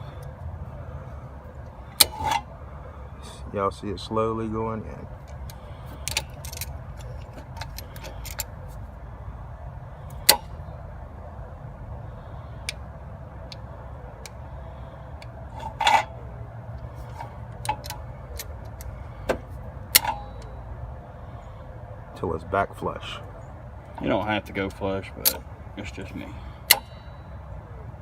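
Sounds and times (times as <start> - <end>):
steady low rumble: 0.0 - 28.0
hand tools clicking and knocking: 1.9 - 2.4, 5.3 - 8.5, 15.6 - 16.2, 17.0 - 20.5.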